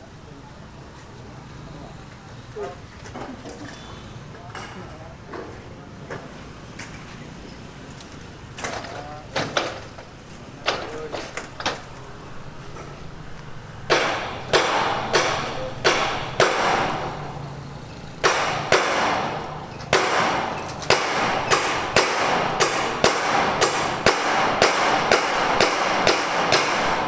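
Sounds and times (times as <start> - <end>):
hammer blows ringing: 13.9 - 27.0.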